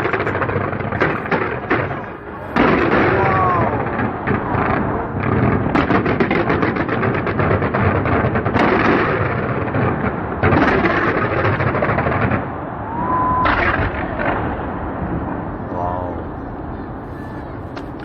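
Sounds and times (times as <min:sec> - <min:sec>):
fireworks crackling bangs: 0:00.0 - 0:18.0
heavy firework bursts: 0:00.0 - 0:18.0
rising firework whistle: 0:12.7 - 0:14.4.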